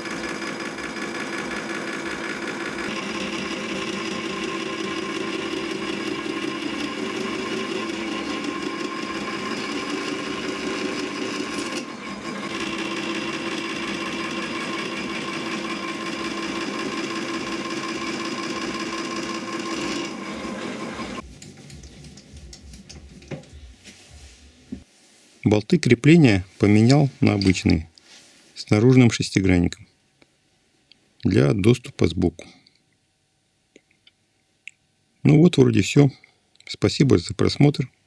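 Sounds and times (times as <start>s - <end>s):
small lathe running: 0.0s - 21.2s.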